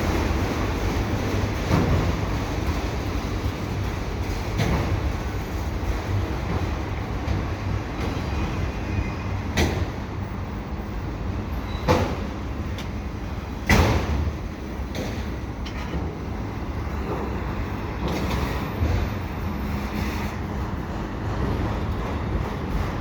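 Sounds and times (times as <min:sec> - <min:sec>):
train wheels rumbling on rail: 0:00.0 - 0:23.0.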